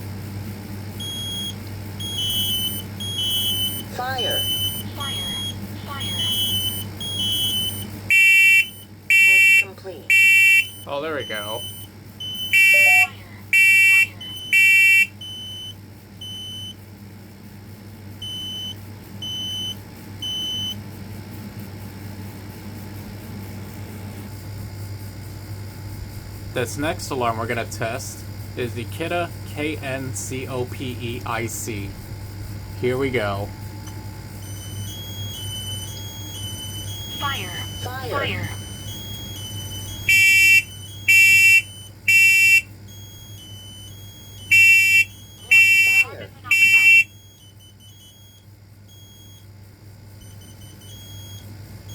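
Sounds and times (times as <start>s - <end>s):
smoke alarm beeping: 1.0s - 16.8s, 18.2s - 20.8s, 32.8s - 49.5s, 50.2s - 51.9s
higher short tones: 44.4s - 47.2s.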